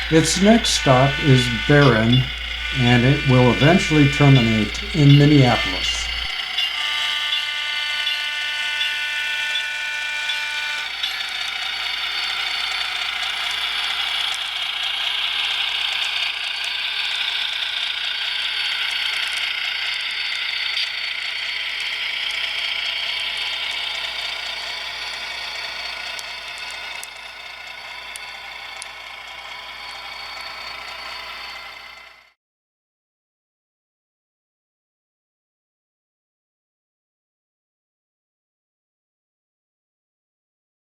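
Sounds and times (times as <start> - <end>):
multi-note tone: 0.0 - 11.1
model train whirring on track: 0.0 - 32.4.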